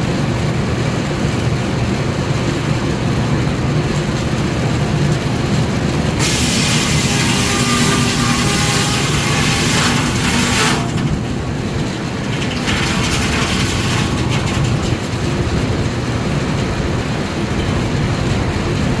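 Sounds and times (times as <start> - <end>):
sawmill machinery rumbling: 0.0 - 19.0
mechanical clatter: 3.8 - 19.0
loud steam hiss: 6.2 - 11.1.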